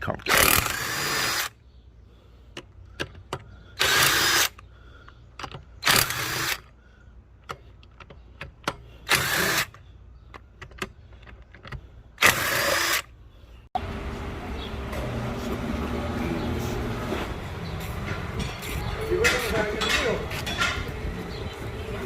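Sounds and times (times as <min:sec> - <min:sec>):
air tool bursts: 0:03.8 - 0:04.6, 0:05.8 - 0:06.7, 0:09.1 - 0:09.8, 0:12.2 - 0:13.1.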